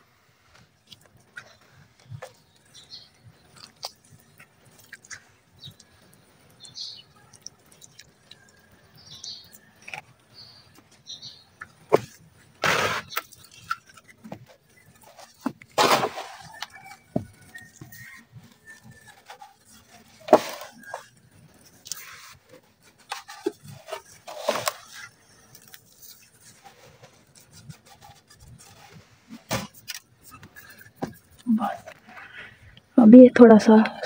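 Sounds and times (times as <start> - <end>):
birds chirping: 1.2 - 15.5.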